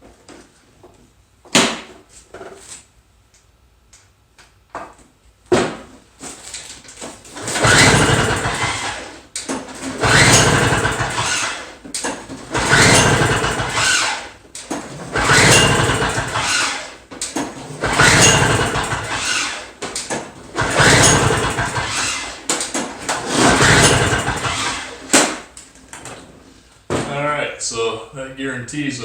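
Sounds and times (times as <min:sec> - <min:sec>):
snow blower engine cranking: 0:07.3 - 0:25.4.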